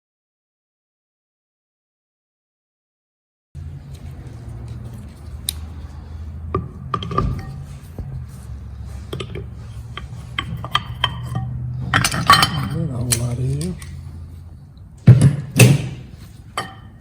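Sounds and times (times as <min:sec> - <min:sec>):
low hum: 0:03.6 - 0:17.0
metal parts clinking: 0:10.0 - 0:14.0.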